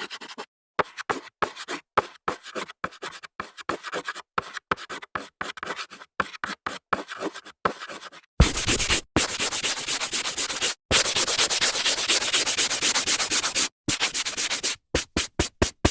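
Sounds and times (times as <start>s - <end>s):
chalk scratching on blackboard: 0.0s - 15.9s
rubbing strokes across board: 8.4s - 15.9s.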